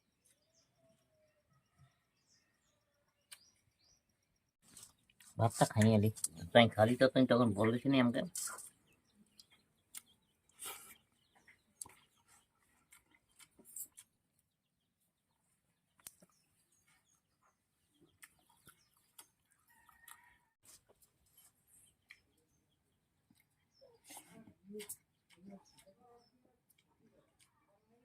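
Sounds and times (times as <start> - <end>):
soft bird chirps: 7.7 - 28.0.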